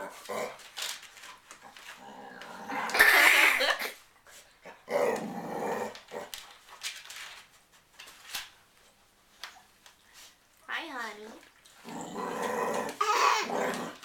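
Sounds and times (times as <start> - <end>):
rasping growls: 1.6 - 3.3, 11.8 - 14.0.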